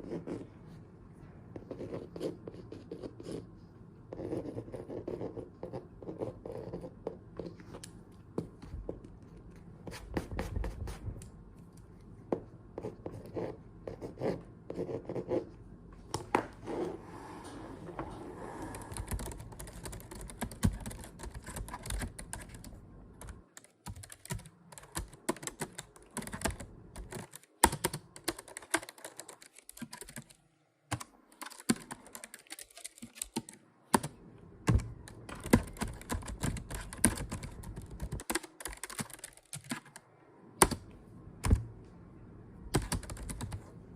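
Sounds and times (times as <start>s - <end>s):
keyboard typing clicks: 34.7s - 40.0s.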